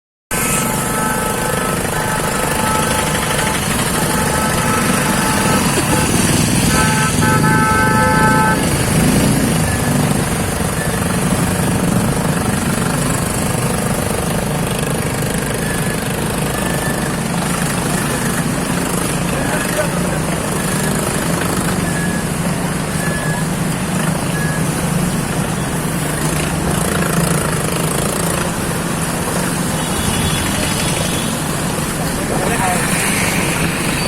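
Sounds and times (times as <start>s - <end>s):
car horn: 0.3s - 11.4s, 29.4s - 32.0s
vehicle engines rumbling: 0.3s - 34.0s.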